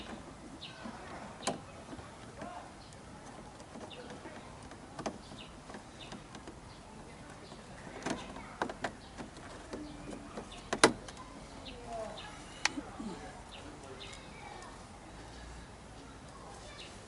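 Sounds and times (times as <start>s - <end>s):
plastic clicks and knocks of car trim: 0.0s - 11.2s.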